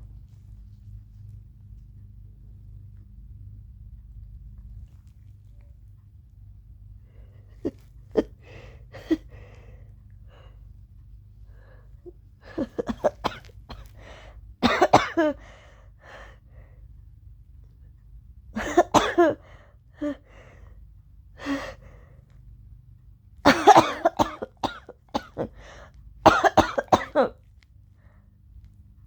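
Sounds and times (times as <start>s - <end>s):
woman coughing: 7.6s - 9.3s, 12.4s - 14.0s, 14.6s - 15.4s, 18.6s - 19.4s, 23.4s - 25.6s, 26.3s - 27.4s.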